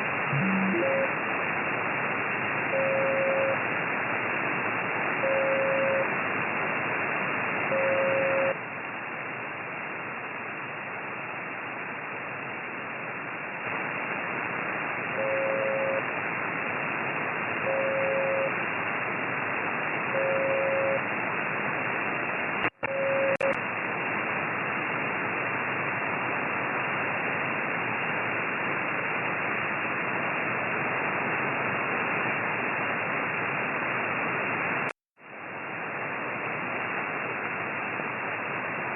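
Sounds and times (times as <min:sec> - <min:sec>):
radio band noise hiss: 0:00.0 - 0:38.9
short tone dashes: 0:00.3 - 0:01.1.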